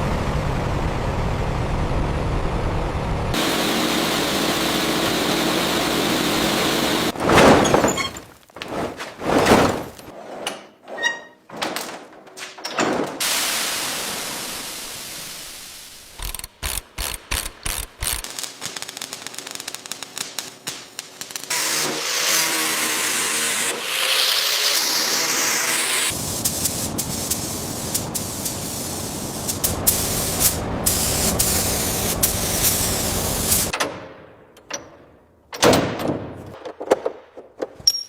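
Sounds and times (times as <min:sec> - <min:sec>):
steady hiss: 0:03.4 - 0:07.1, 0:13.2 - 0:16.4, 0:26.1 - 0:33.7
loud knocks and thuds: 0:07.2 - 0:10.1.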